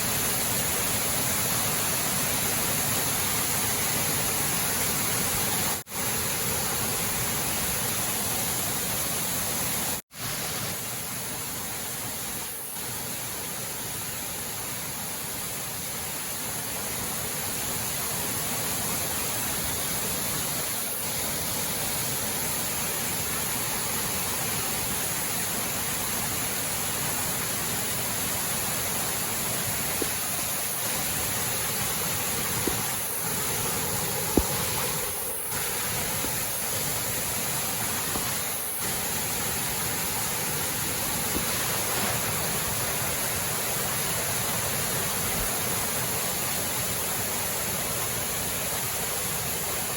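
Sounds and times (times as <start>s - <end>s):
waterfall rushing: 16.0s - 49.9s.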